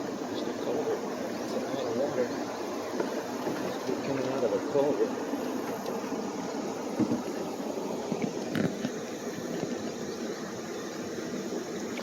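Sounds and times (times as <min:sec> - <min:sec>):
river water rushing: 0:00.0 - 0:12.0
light knocks: 0:07.0 - 0:07.3.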